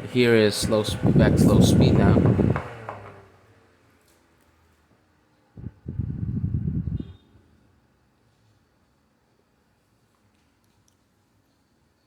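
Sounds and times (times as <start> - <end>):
desk fan humming: 0.0 - 3.2, 5.6 - 7.2.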